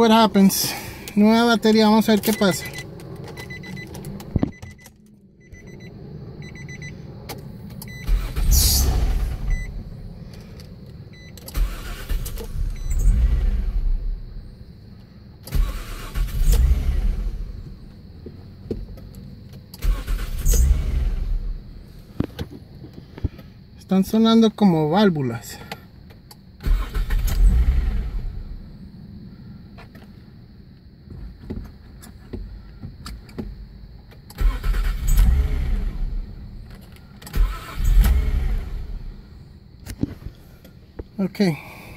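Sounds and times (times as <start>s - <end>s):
car starter cranking engine: 0.4s - 5.8s, 6.5s - 14.6s, 15.4s - 17.9s, 18.9s - 23.5s, 25.5s - 28.8s, 34.1s - 40.8s.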